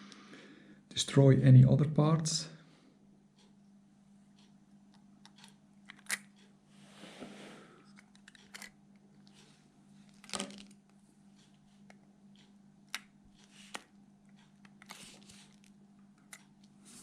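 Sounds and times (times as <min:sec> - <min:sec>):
steady low hum: 0:00.0 - 0:17.0
small watch parts clicking: 0:04.4 - 0:06.5, 0:07.9 - 0:09.4.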